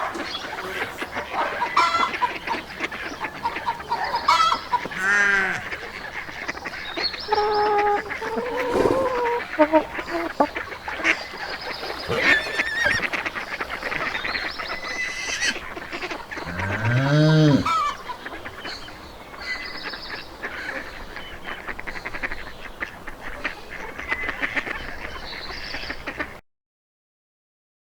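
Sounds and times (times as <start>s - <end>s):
low farm animal call: 0.0s - 18.1s
geese honking: 0.0s - 19.6s
poultry calling: 0.0s - 19.6s.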